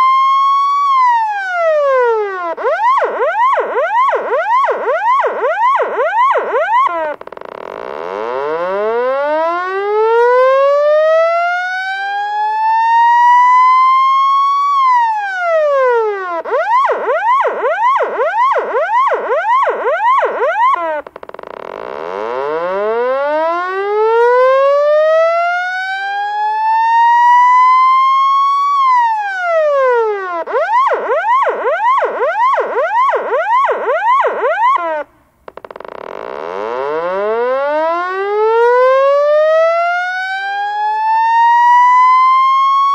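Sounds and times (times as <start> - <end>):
electronic police siren: 0.0 - 42.9.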